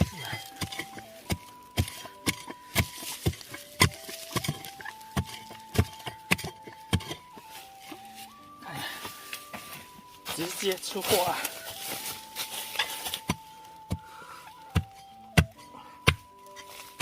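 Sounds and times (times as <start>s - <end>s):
hoe chopping into ground: 0.0s - 8.1s.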